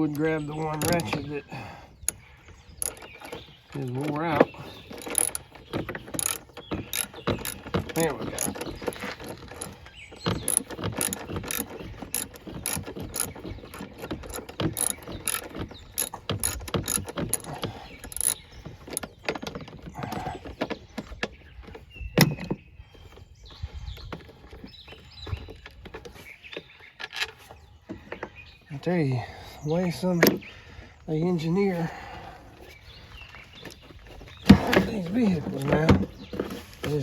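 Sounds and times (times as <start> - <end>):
socket ratchet clicking: 0.1 - 1.3, 2.8 - 3.4, 4.8 - 19.1.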